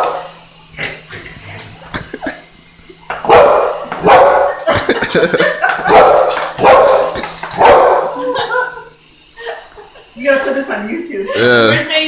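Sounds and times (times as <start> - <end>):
dog barking: 3.2 - 4.6, 5.8 - 8.2.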